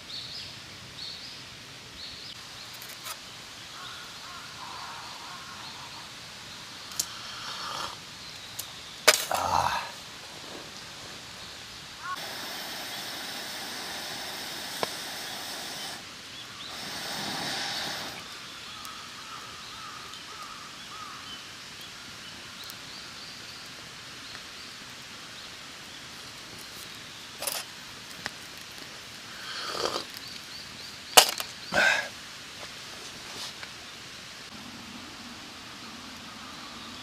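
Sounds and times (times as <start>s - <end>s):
faint bird calls: 3.0s - 10.0s, 12.0s - 21.5s.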